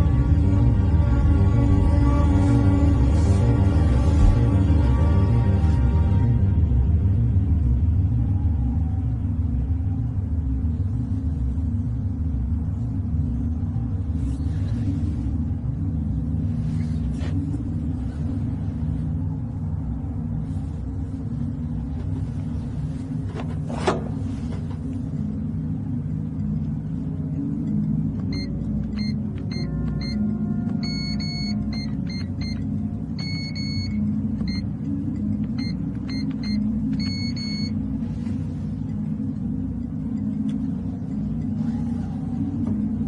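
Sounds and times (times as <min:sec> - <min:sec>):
steady low rumble: 0:00.0 - 0:43.0
door lock keypad beeps: 0:35.6 - 0:37.7.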